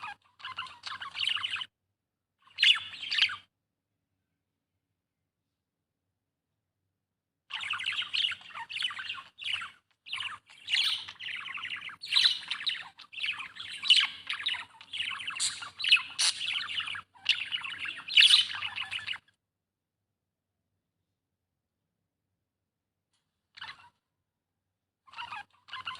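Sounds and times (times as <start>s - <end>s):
budgerigar chattering: 7.6s - 19.2s.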